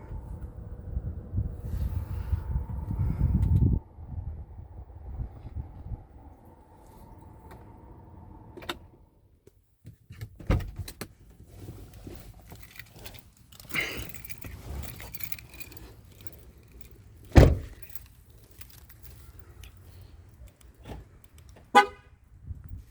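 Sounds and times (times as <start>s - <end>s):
handling clicks and rattles: 10.1s - 21.7s
keys jangling: 12.0s - 21.6s
loud thump: 17.4s - 17.8s.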